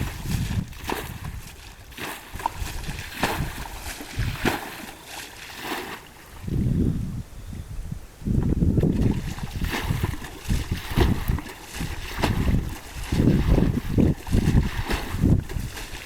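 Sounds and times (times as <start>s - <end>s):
water splashing and sloshing: 0.0s - 6.7s, 8.8s - 16.0s.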